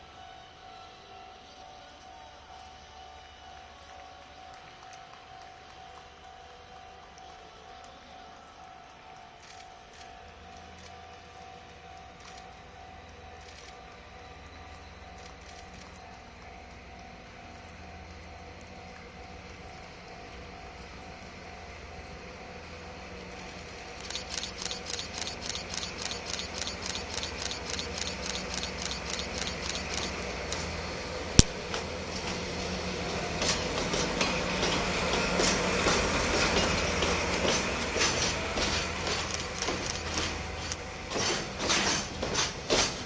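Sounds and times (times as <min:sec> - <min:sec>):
train wheels clacking on rails: 0:23.2 - 0:30.8, 0:31.6 - 0:43.0.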